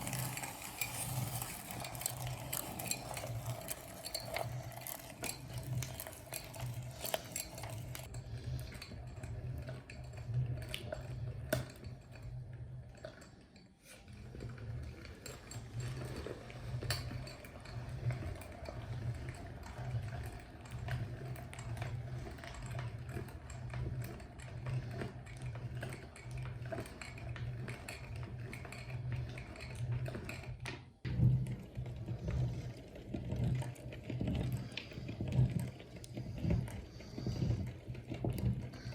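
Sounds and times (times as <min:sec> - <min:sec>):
meat grinder humming: 0:00.0 - 0:08.6.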